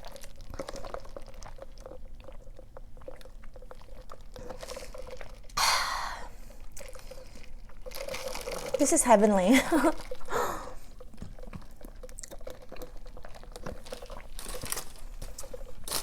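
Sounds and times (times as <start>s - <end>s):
wet chewing: 0.0s - 5.6s, 9.7s - 16.0s
breathy hiss: 5.6s - 6.6s.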